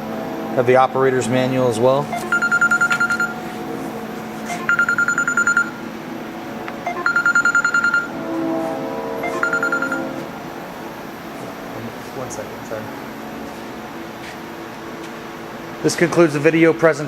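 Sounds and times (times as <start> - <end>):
electronic telephone ringing: 2.1 - 3.5, 4.4 - 5.9, 6.8 - 8.2, 9.2 - 10.2.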